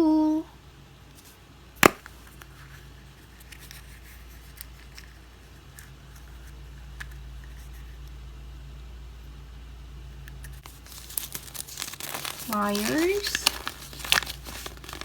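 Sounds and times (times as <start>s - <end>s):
handling noises: 10.6s - 15.0s.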